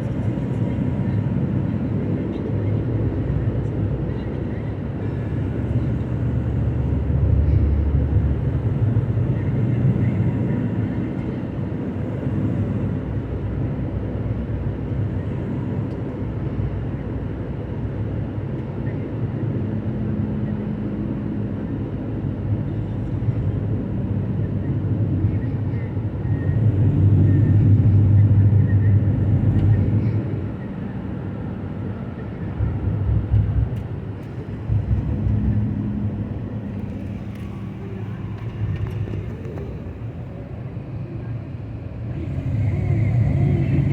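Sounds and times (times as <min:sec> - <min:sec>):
vehicle road and engine noise: 0:00.0 - 0:43.9
low steady hum: 0:32.1 - 0:43.9.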